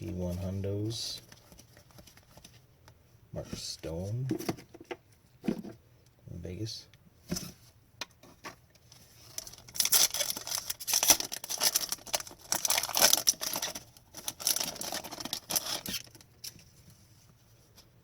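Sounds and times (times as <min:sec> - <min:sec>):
trading cards rustling and crinkling: 0:00.0 - 0:02.7, 0:08.3 - 0:16.9.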